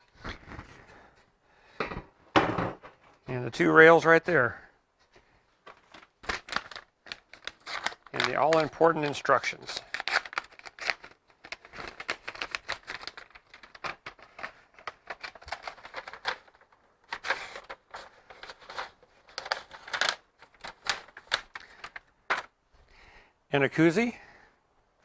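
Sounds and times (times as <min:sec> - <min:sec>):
packaging rustling: 0:05.6 - 0:22.6.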